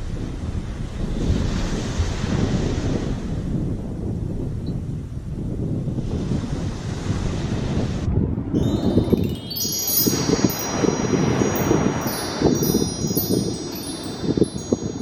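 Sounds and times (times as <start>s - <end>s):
wind: 0.0s - 15.0s
small bells jingling: 8.6s - 15.0s.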